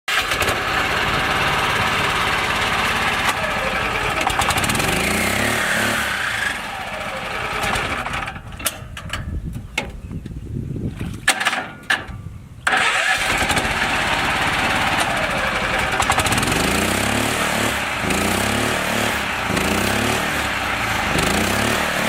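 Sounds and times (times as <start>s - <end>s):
engine running: 0.1s - 8.9s, 12.6s - 22.0s
sharp clicks and knocks: 7.6s - 10.4s.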